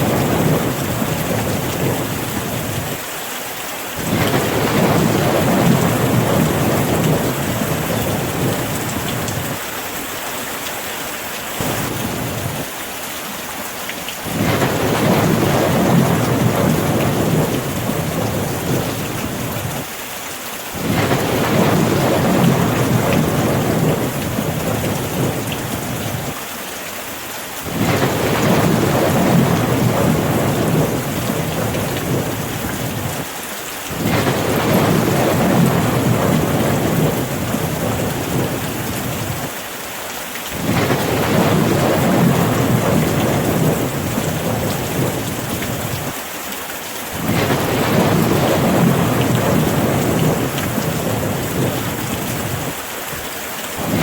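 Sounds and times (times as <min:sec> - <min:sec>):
rain hissing: 0:00.0 - 0:54.0.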